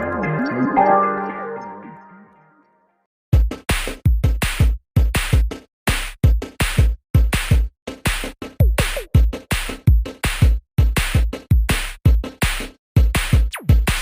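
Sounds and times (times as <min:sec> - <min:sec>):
soft synth music: 0:00.0 - 0:02.9
drum machine beat with heavy kicks: 0:03.4 - 0:14.0.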